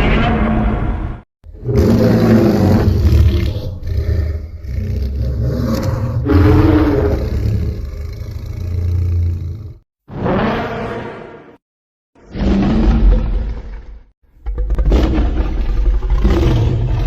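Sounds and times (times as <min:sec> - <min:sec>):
monster roar: 0:01.5 - 0:11.4, 0:14.7 - 0:17.0.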